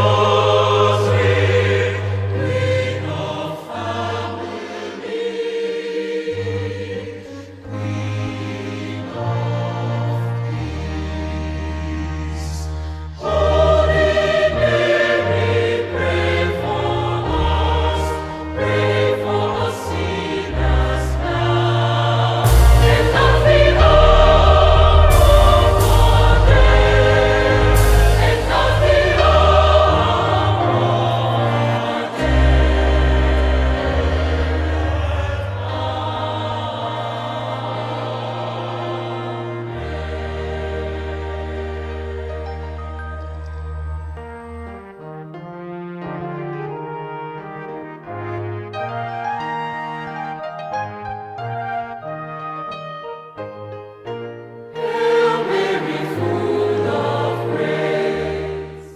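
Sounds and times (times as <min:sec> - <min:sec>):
choir singing: 0:00.0 - 0:44.2, 0:54.7 - 0:58.9
sustained low accompaniment: 0:20.0 - 0:45.1.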